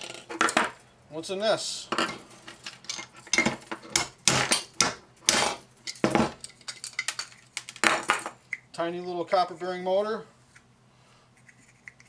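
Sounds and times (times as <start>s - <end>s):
metal parts clinking and scraping: 1.9s - 8.4s.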